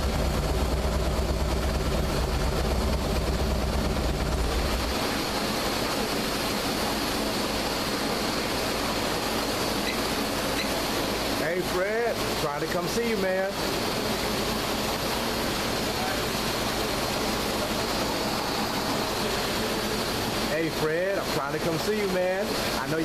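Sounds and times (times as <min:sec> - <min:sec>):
motorcycle engine running: 0:00.0 - 0:05.1
steady rushing noise: 0:00.0 - 0:23.0.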